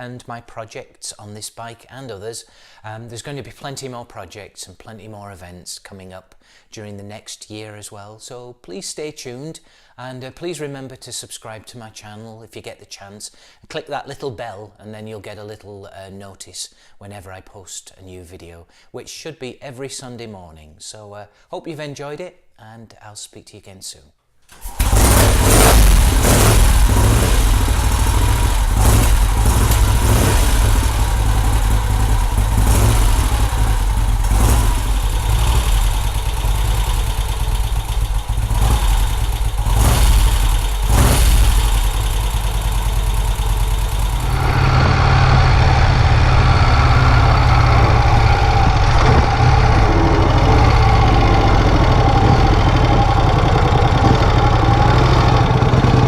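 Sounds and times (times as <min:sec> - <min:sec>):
motorcycle engine rumbling: 0:24.6 - 0:56.0.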